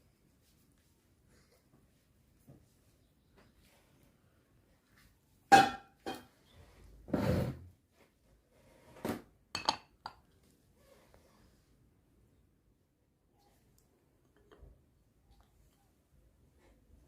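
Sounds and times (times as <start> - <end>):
kitchenware clinking and knocking: 5.5 - 6.4, 9.5 - 10.3.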